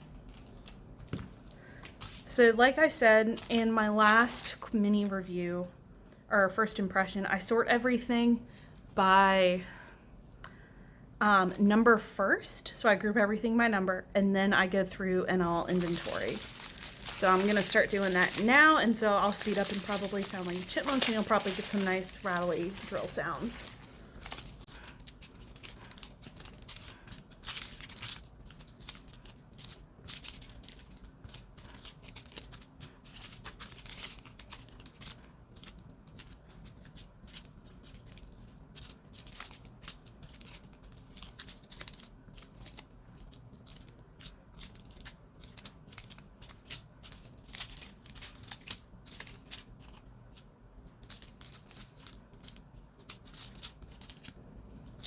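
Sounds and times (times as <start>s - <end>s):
plastic bags crinkling: 15.5s - 43.9s.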